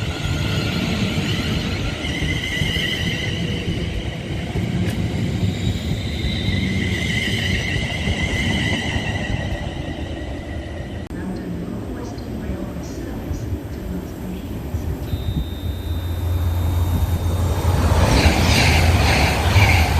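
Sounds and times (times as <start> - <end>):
train rumble: 0.0 - 19.9
high wavering whine: 15.0 - 19.9.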